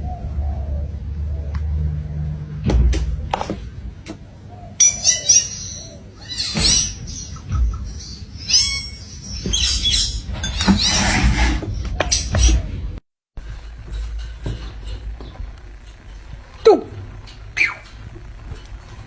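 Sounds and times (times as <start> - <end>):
low thumps: 2.6 - 4.4
bird chirping: 4.4 - 11.0, 16.7 - 19.0.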